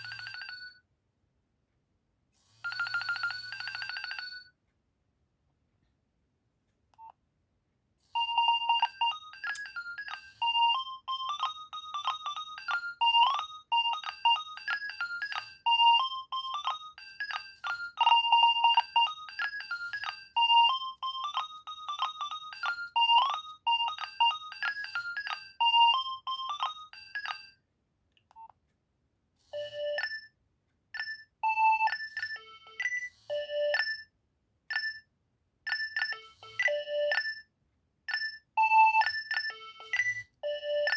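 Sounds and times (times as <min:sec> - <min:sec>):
mobile phone ringtone melody: 0:00.0 - 0:00.8, 0:02.6 - 0:04.5, 0:08.1 - 0:27.5, 0:29.5 - 0:30.3, 0:31.0 - 0:34.1, 0:35.7 - 0:37.5, 0:38.1 - 0:40.9.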